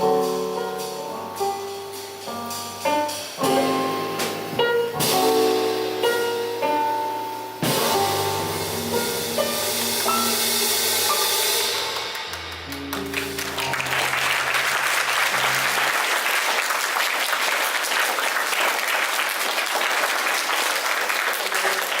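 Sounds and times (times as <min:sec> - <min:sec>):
cymbals: 0:00.0 - 0:16.5
jazz piano trio: 0:00.0 - 0:22.0
audience applause: 0:11.9 - 0:22.0.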